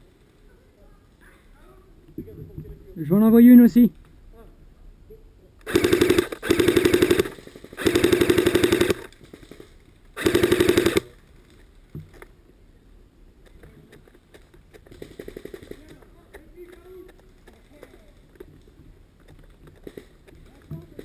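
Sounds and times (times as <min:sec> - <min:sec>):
airsoft rifle full-auto bursts: 0:05.7 - 0:09.6, 0:10.2 - 0:11.2.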